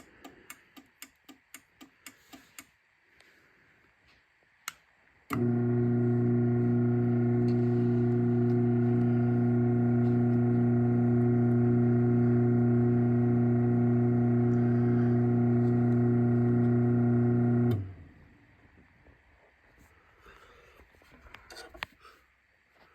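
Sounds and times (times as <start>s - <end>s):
garage door opener motor hum: 5.3s - 18.1s.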